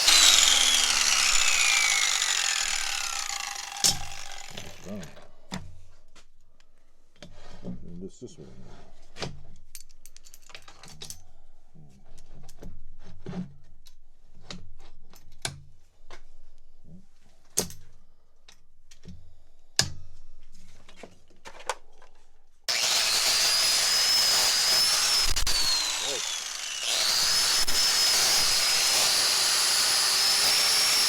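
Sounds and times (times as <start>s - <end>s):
wire wheel grinder whining: 0.0s - 5.2s, 22.7s - 31.0s.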